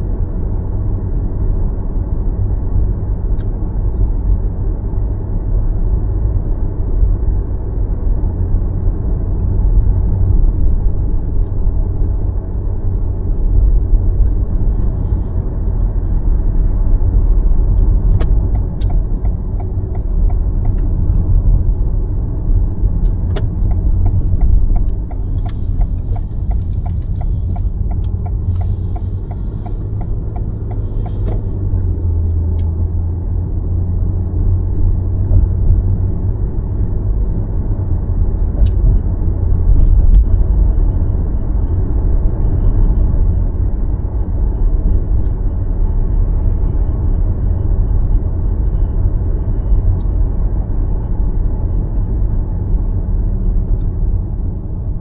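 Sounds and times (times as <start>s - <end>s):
car road and engine rumble: 0.0s - 55.0s
regular ticking: 18.0s - 21.6s, 23.0s - 31.6s.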